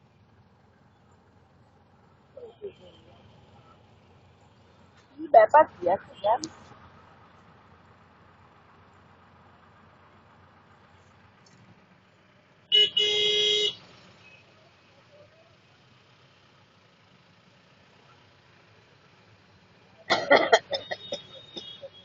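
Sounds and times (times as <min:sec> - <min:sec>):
vehicle horn: 0:12.7 - 0:14.4
person coughing: 0:20.1 - 0:21.8.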